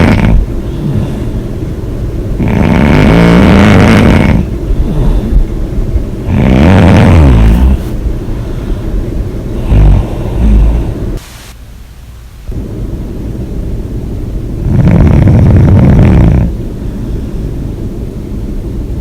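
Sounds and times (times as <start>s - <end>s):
person snoring loudly: 0.0s - 1.4s, 2.4s - 5.4s, 6.2s - 8.0s, 9.5s - 11.2s, 14.6s - 16.6s
quiet breathing: 0.0s - 11.2s, 14.9s - 17.9s.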